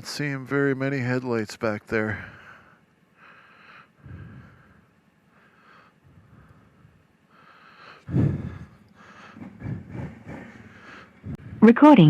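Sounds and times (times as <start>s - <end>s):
close breathing into microphone: 2.1s - 11.6s.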